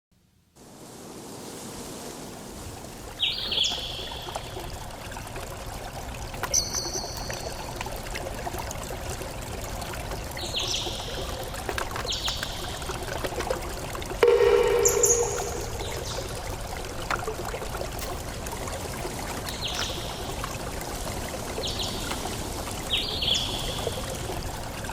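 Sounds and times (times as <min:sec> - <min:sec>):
water trickling: 0:00.6 - 0:24.9
high bird calls: 0:03.2 - 0:04.4, 0:14.2 - 0:16.5
low pitched tone: 0:14.2 - 0:16.5.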